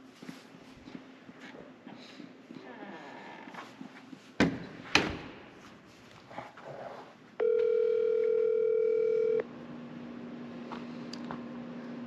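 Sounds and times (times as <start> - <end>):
phone ringback tone: 7.4 - 9.4.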